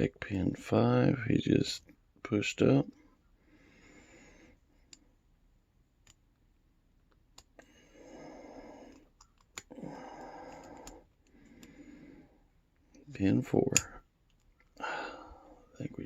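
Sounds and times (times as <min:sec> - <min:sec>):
soft breathing: 0:03.0 - 0:05.3, 0:07.5 - 0:13.1, 0:14.7 - 0:15.8
lock pick metallic clicks: 0:13.7 - 0:14.5.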